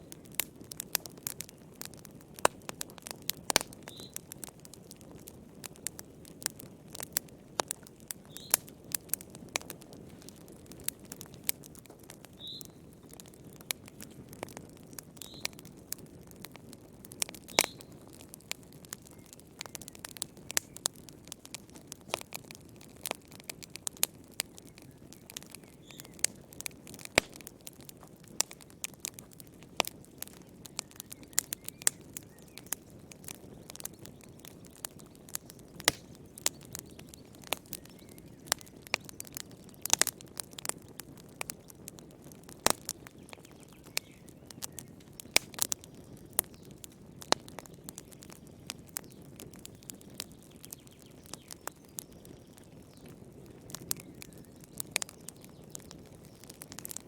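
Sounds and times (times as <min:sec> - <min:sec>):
fire crackling and popping: 0:00.0 - 0:57.0
low rush of burning: 0:00.1 - 0:43.3.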